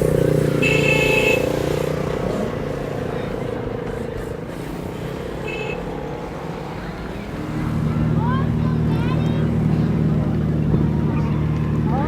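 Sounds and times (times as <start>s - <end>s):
car engine rumbling: 0.0s - 12.0s.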